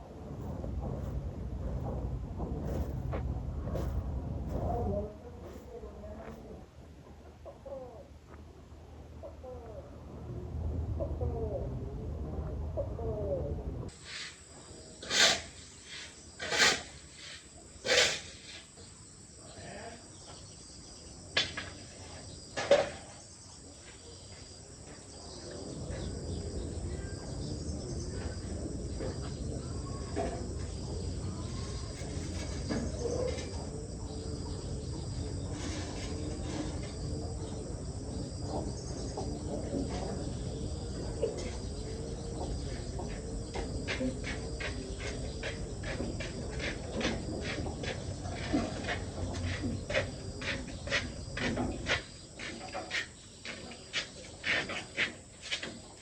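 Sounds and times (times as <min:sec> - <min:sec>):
low steady noise: 0:00.0 - 0:51.9
insects trilling: 0:13.0 - 0:56.0.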